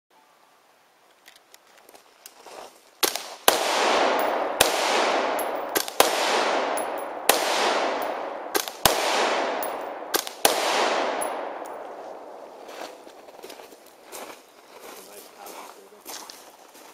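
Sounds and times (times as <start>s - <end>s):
rifle shots with echo: 3.0s - 13.1s.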